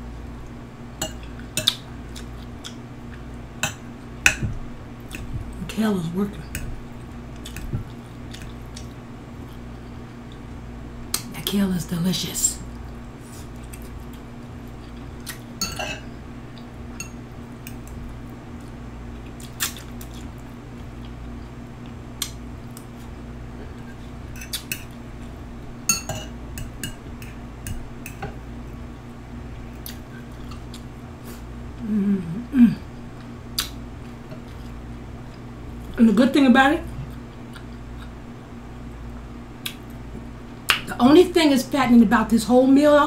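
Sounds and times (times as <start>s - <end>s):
low electrical hum: 0.0s - 43.0s
person murmuring: 31.8s - 32.9s.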